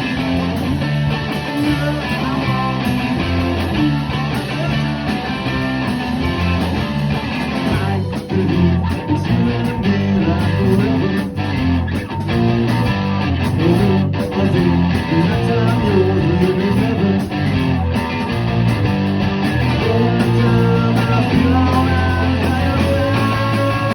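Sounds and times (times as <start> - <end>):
guitar music with bass: 0.0 - 23.9.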